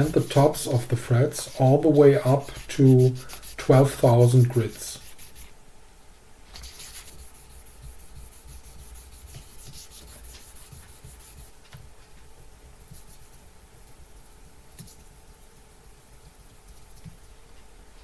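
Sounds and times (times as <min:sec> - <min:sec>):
sanding pad scraping metal: 0:00.0 - 0:05.5.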